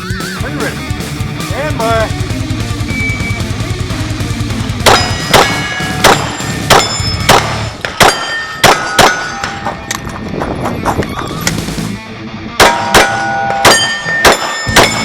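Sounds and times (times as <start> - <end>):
pistol shots: 4.8 - 9.9, 12.6 - 15.0
bullet hitting steel plate clang: 4.8 - 10.1, 12.6 - 15.0.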